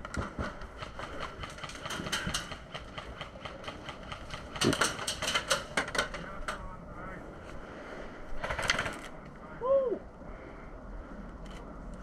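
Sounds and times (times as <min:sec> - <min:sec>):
airsoft guns firing: 0:00.0 - 0:05.9.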